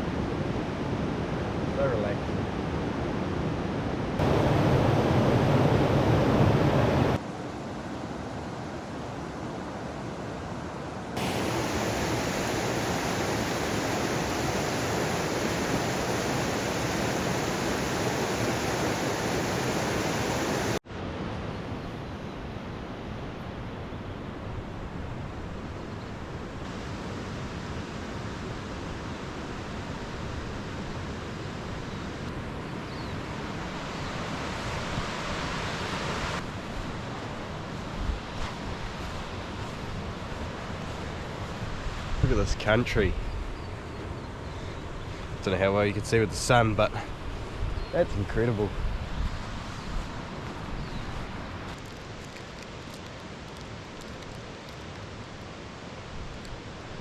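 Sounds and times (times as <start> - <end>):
rushing river water: 4.2 - 7.2, 11.2 - 20.8.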